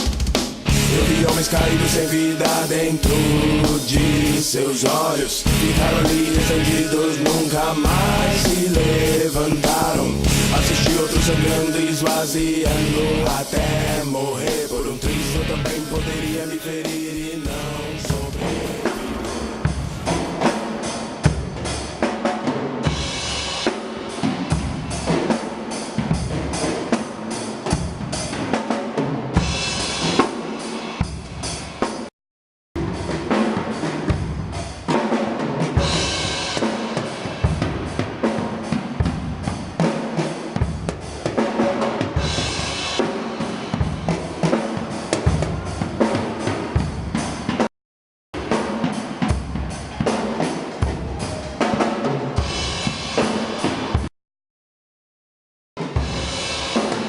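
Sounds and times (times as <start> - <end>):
bass drum and snare beat: 0.0 - 20.6
crash cymbal washes: 0.7 - 15.1.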